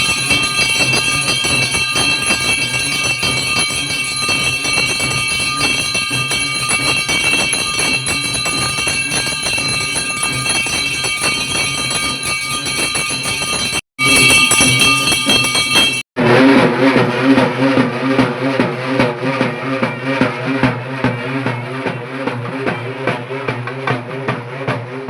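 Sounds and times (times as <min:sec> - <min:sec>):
high ringing tones: 0:00.0 - 0:16.0
jingling percussion: 0:00.0 - 0:16.1, 0:17.8 - 0:24.4.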